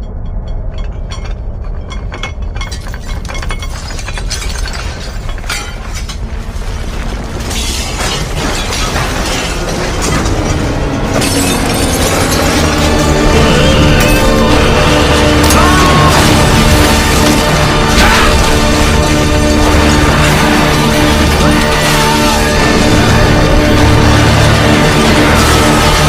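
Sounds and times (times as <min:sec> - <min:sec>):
debris rattling and shattering: 0:00.0 - 0:26.0
deep continuous rumble: 0:00.0 - 0:26.0.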